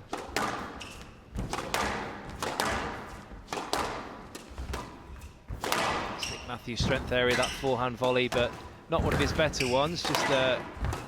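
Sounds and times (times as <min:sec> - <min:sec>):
squash ball smacks: 0:00.0 - 0:06.2
shoe squeak on court floor: 0:00.6 - 0:01.3, 0:06.1 - 0:06.6, 0:07.2 - 0:07.9, 0:09.2 - 0:10.5.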